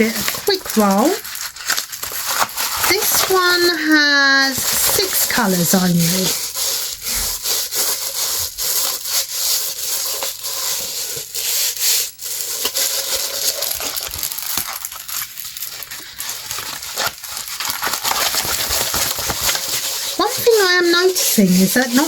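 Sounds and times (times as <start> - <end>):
plastic packaging crinkling: 0.0 - 22.0.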